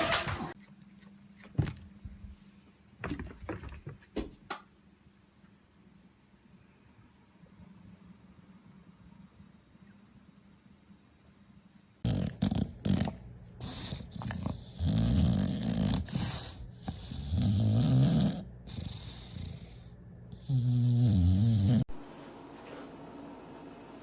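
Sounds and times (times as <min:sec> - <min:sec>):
dog snoring: 0:12.0 - 0:21.9.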